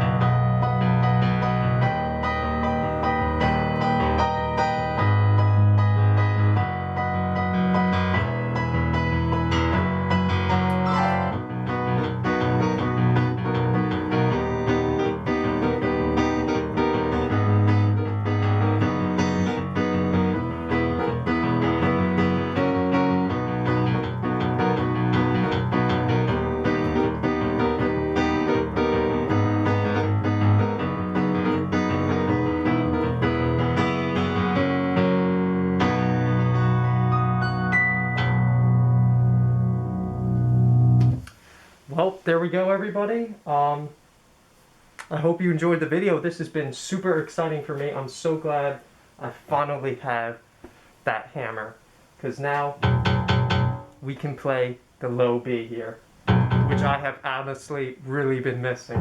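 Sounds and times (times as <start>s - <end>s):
electric piano playing chords: 0.0s - 41.3s, 52.8s - 54.1s, 56.2s - 57.1s.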